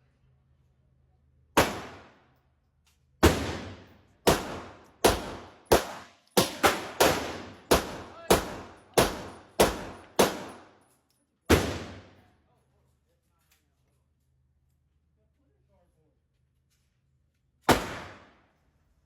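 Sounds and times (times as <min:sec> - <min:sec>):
gunshots with echo: 0:01.6 - 0:02.1, 0:03.2 - 0:10.7, 0:11.5 - 0:12.2, 0:17.7 - 0:18.4.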